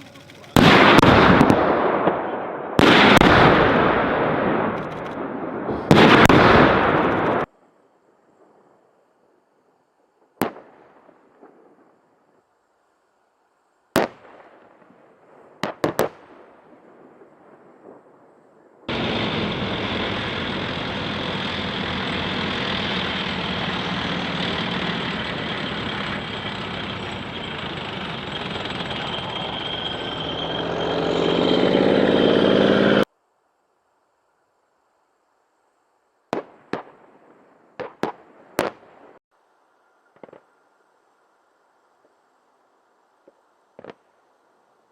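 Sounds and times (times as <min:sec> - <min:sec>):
gunshots echoing: 0:00.2 - 0:07.5
heavy weapon blast: 0:00.6 - 0:01.9
loud rushing noise with hum: 0:18.9 - 0:33.1.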